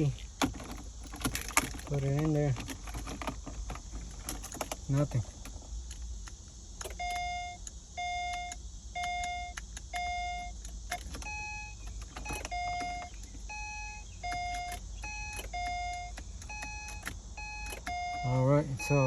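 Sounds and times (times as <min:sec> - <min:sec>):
car warning chime beeping: 0:06.8 - 0:19.0
higher-pitched beep: 0:12.4 - 0:19.0.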